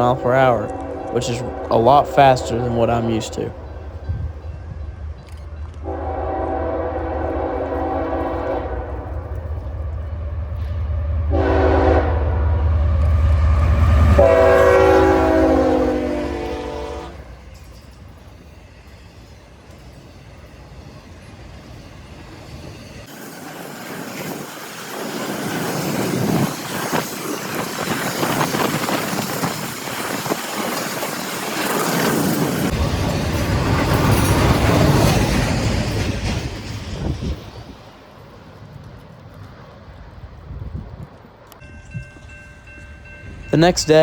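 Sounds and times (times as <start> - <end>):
freight train wheels clattering: 17.3 - 39.8.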